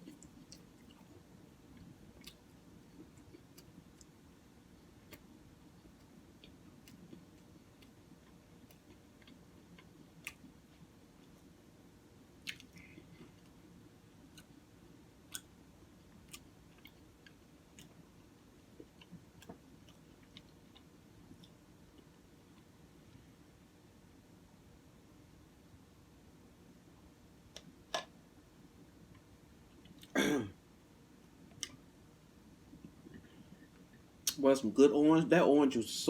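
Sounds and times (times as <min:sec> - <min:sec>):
person chewing: 0:00.0 - 0:04.2, 0:05.0 - 0:10.5, 0:12.4 - 0:13.6, 0:16.2 - 0:18.0
low steady hum: 0:00.0 - 0:36.0
mouth clicks and smacks: 0:12.4 - 0:13.5.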